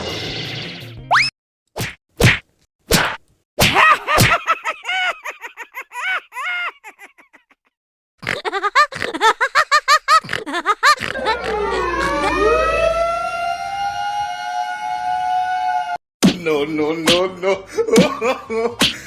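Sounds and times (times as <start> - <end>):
person laughing: 4.0 - 7.6, 8.3 - 12.5
sharp slap sound effects: 16.2 - 16.5, 18.0 - 18.2, 18.8 - 19.0.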